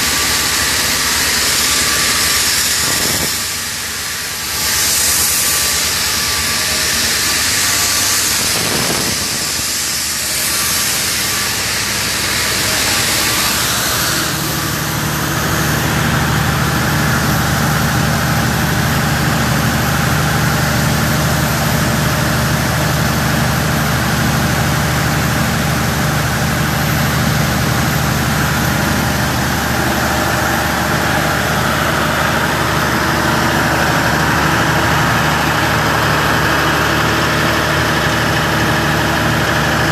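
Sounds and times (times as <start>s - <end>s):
hiss of escaping gas: 0.0s - 18.3s
low machine hum: 0.0s - 39.9s.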